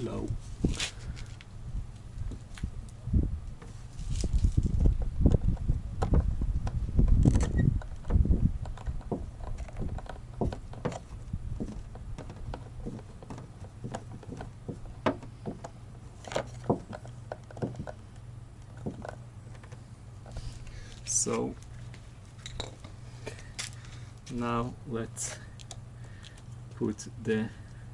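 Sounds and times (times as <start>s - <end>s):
handling rumble: 0.0s - 27.9s.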